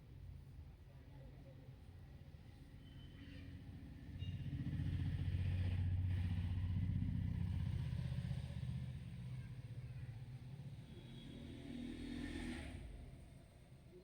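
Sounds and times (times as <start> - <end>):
vehicle engine passing by: 10.3 - 13.9.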